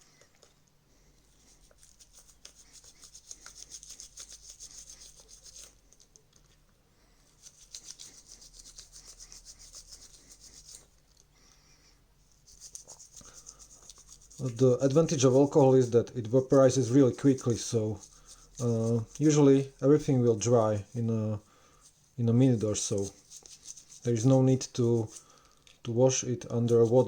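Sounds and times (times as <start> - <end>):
faint scrubbing strokes: 0.0 - 6.0, 6.9 - 27.0.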